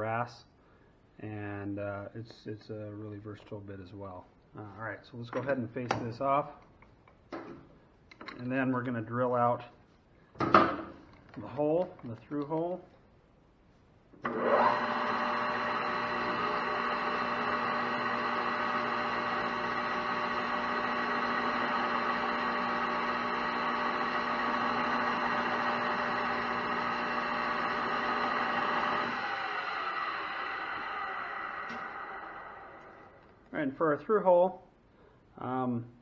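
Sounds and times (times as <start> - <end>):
metal lathe motor whining: 14.2 - 33.3.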